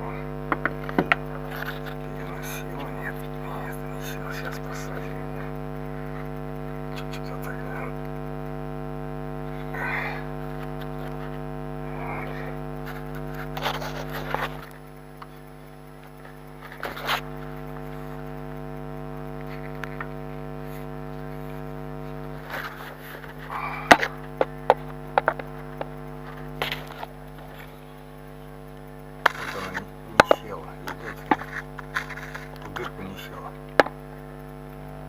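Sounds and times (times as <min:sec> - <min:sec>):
electrical hum: 0:00.0 - 0:35.0.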